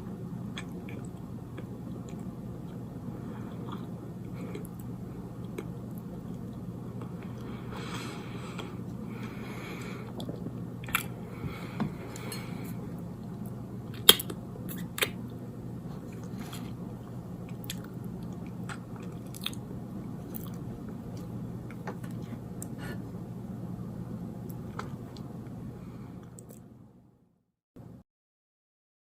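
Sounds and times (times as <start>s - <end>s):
low hum: 0.0s - 28.0s
close chewing: 17.5s - 19.6s, 20.2s - 22.8s.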